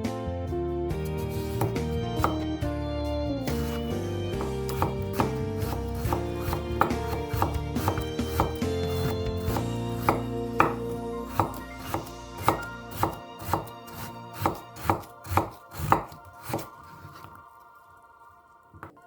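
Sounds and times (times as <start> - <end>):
soft background music: 0.0 - 19.0
knife chopping on cutting board: 1.0 - 2.4, 3.4 - 17.3.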